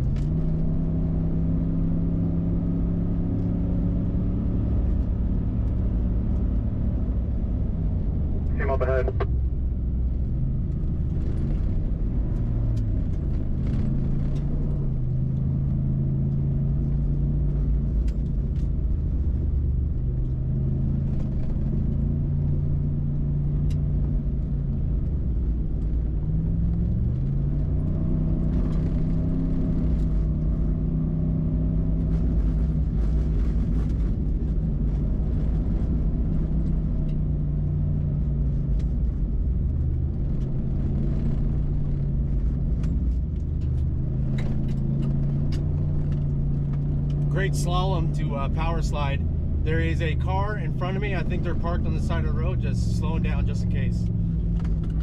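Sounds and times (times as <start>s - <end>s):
low road rumble: 0.0s - 55.0s
truck engine running: 8.4s - 9.5s, 42.0s - 55.0s.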